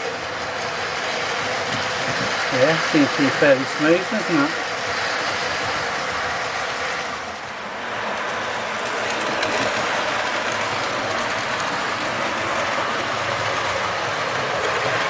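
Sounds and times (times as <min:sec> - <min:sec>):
model train wheels rattling: 0:00.0 - 0:07.0.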